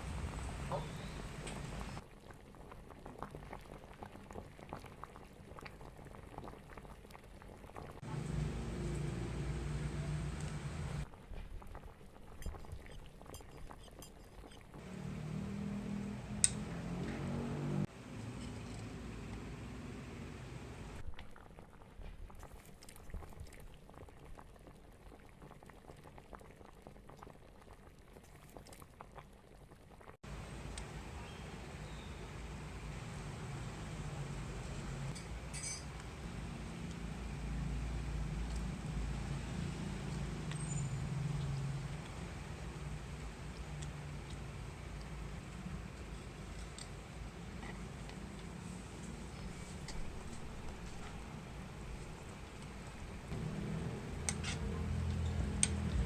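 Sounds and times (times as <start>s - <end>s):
soup bubbling in pot: 0.2s - 9.0s, 11.0s - 14.8s, 21.0s - 32.1s.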